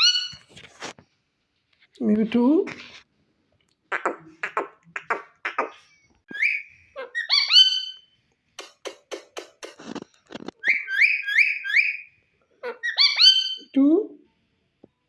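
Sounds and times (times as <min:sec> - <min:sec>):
parakeet calling: 0:03.9 - 0:10.0, 0:10.6 - 0:13.7.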